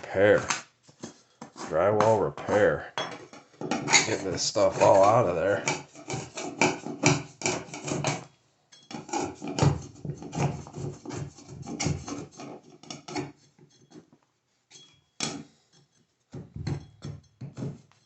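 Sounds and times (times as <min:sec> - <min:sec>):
scraping wet material from drywall: 0:00.0 - 0:02.8, 0:03.7 - 0:08.3, 0:08.9 - 0:14.1
sharp scrape or knock: 0:03.7 - 0:08.2.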